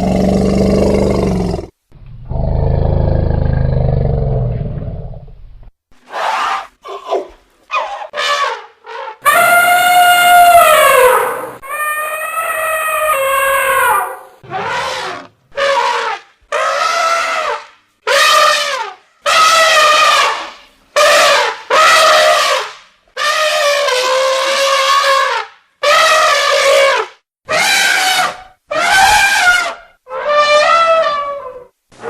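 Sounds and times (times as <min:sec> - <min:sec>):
elephant trumpeting: 0:07.7 - 0:22.6, 0:23.2 - 0:31.7.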